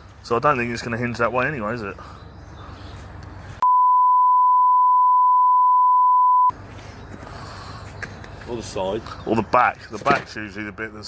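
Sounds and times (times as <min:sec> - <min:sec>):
censor bleep: 0:03.6 - 0:06.5.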